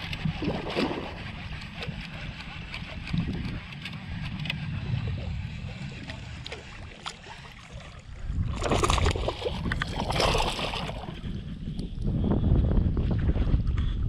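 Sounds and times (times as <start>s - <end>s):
wind buffeting microphone: 0.0s - 14.0s
water splashing: 5.6s - 11.2s.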